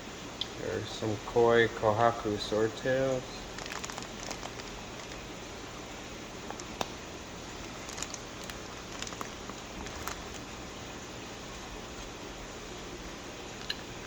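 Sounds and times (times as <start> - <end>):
steady background hiss: 0.0 - 14.0
plastic bags rustling: 3.3 - 5.4, 6.4 - 10.7.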